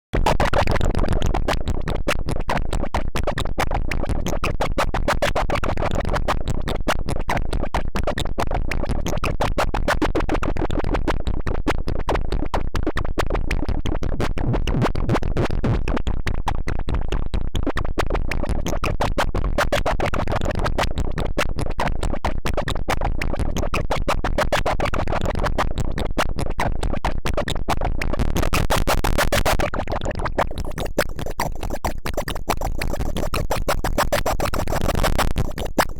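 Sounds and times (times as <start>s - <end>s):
glitchy electronic music: 28.3s - 35.9s.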